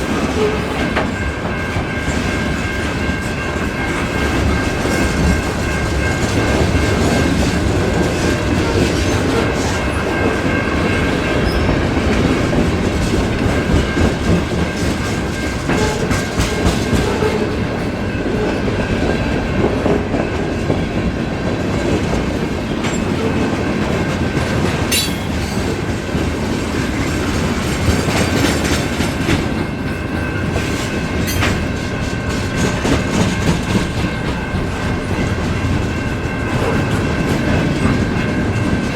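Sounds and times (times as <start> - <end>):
freight train cars rolling: 0.0 - 38.9
high ringing tone from wheels: 9.8 - 12.7, 22.7 - 25.8
wheels clicking over rail joints: 21.7 - 29.7, 30.5 - 38.9.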